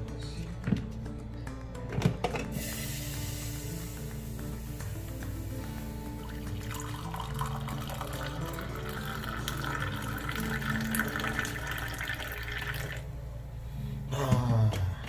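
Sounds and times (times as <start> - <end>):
background music: 0.0 - 15.0
coffee pouring: 5.1 - 13.1.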